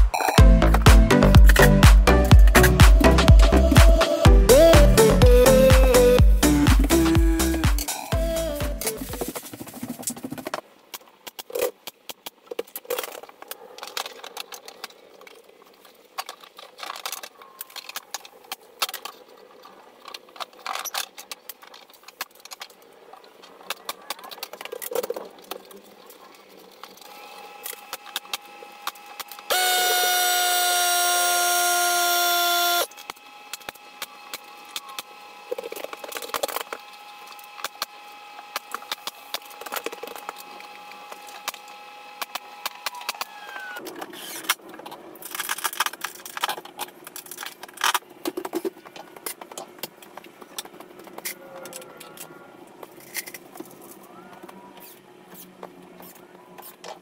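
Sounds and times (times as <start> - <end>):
power tool motor whining: 27.0 - 44.4.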